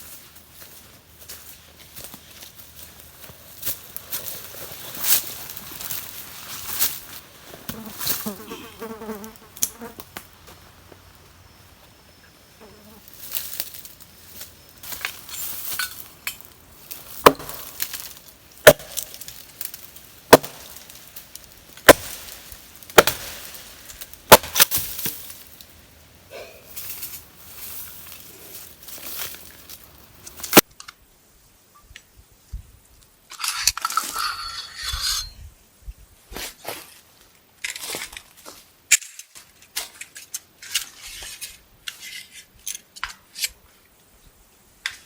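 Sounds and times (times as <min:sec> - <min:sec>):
insect buzzing: 0:07.7 - 0:10.2, 0:12.3 - 0:13.8.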